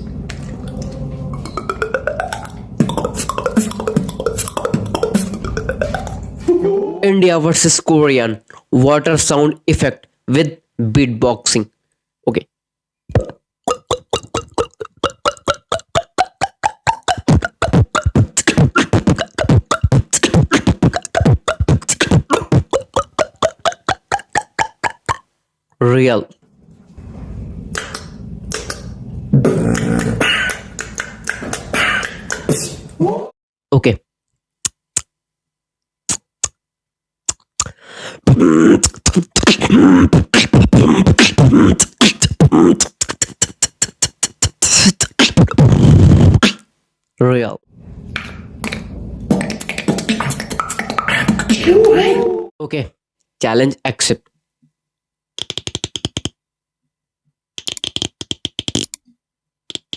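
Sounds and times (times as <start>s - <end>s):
human beatboxing: 1.3s - 7.1s, 13.1s - 25.2s, 27.7s - 33.3s, 36.1s - 36.6s, 37.3s - 46.6s, 48.2s - 52.5s, 55.4s - 56.4s, 57.6s - 58.9s.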